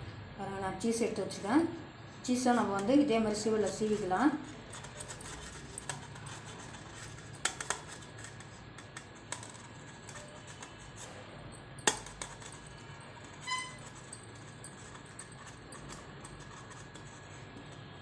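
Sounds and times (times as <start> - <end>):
cheese scraping on metal grater: 3.5 - 11.3, 12.0 - 18.0
short metallic ring: 11.5 - 16.0.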